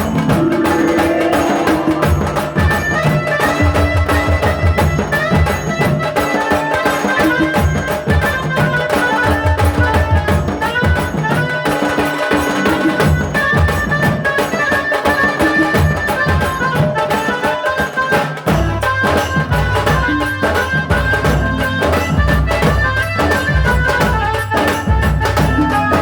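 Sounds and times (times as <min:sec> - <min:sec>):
melody line: 0:00.0 - 0:04.9
fast drumming: 0:00.0 - 0:26.0.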